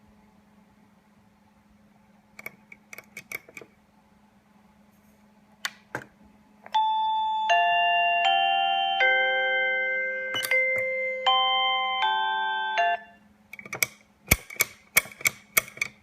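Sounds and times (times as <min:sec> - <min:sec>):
electronic door phone chime: 0:06.7 - 0:13.2
sharper clicks: 0:13.6 - 0:16.0.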